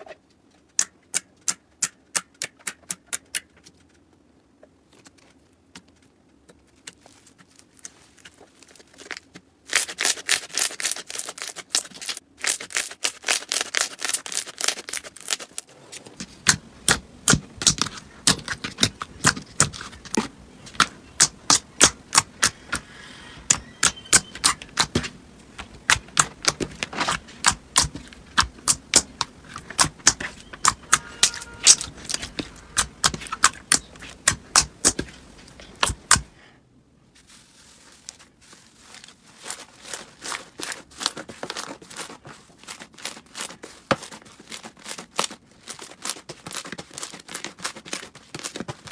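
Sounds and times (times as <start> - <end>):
slime clicking and popping: 16.4 - 22.8, 23.4 - 36.3.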